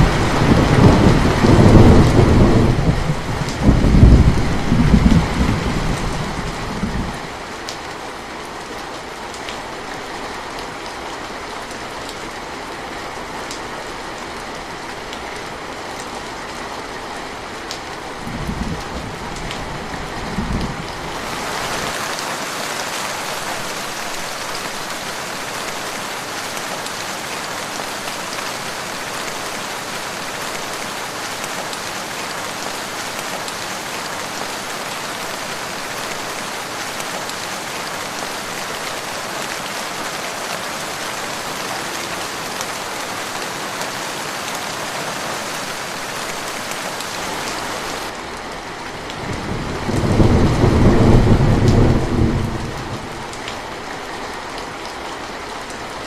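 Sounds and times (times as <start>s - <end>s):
steady rain with drips: 0.0s - 56.0s
heavy rain hiss: 21.0s - 48.3s.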